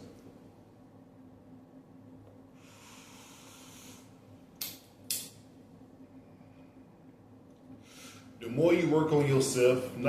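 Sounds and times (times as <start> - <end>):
man breathing in through nose: 2.6 - 4.2, 7.8 - 8.4.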